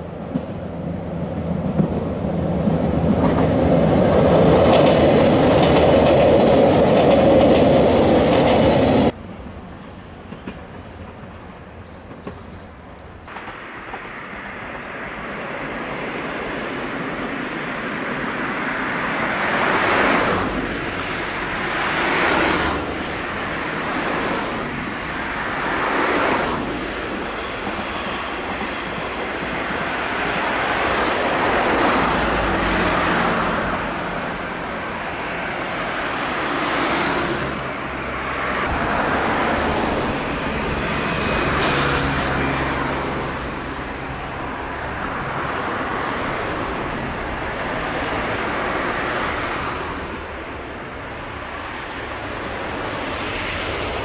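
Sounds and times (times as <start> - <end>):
vehicles whooshing past: 13.3 - 27.5, 30.3 - 54.0.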